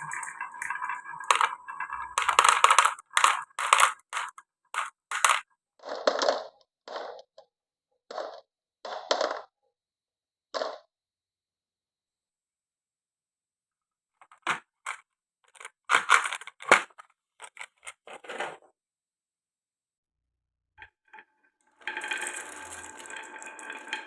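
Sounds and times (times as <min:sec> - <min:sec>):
marbles clacking on wood: 0:00.0 - 0:07.5, 0:08.1 - 0:09.5, 0:14.2 - 0:17.9, 0:20.8 - 0:24.0
marbles rolling: 0:00.0 - 0:07.5, 0:08.1 - 0:09.5, 0:14.2 - 0:18.4, 0:20.8 - 0:24.0.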